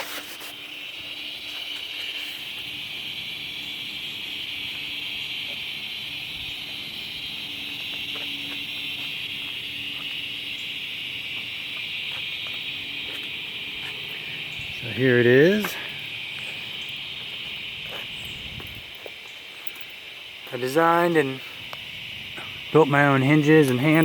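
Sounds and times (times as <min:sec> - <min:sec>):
insects chorus: 0:00.0 - 0:24.0.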